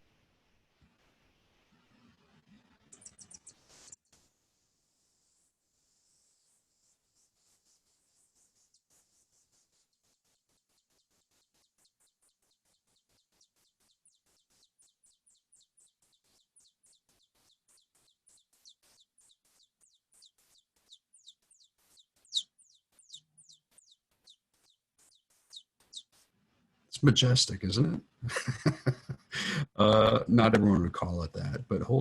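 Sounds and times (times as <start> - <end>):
slowed mouse song trill: 2.9 - 4.0, 6.2 - 26.3.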